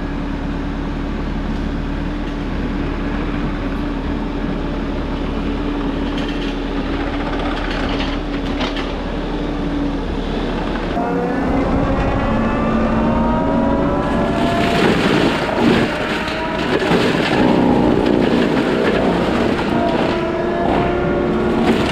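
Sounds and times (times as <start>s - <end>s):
engine and hydraulic drone: 0.0s - 21.9s
rising whine: 9.9s - 21.9s.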